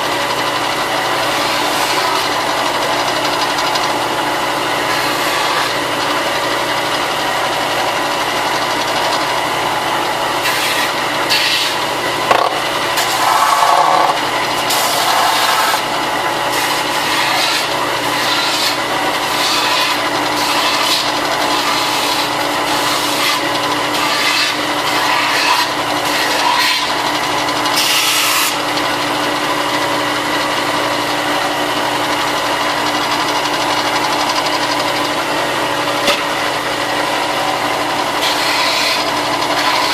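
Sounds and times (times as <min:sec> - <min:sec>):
power sander running: 0:00.0 - 0:39.9
plastic scraping on sander: 0:10.5 - 0:15.9.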